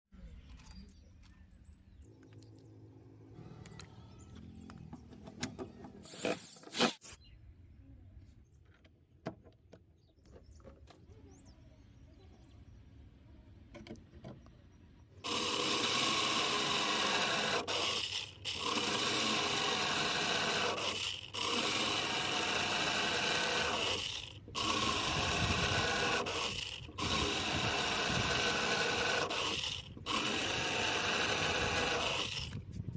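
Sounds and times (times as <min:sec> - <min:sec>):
drilling machine motors running: 0:15.2 - 0:32.6.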